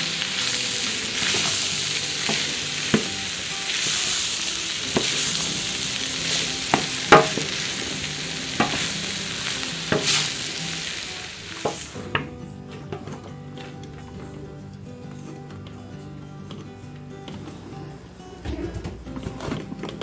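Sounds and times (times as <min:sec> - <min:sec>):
food sizzling in frying pan: 0:00.0 - 0:12.2.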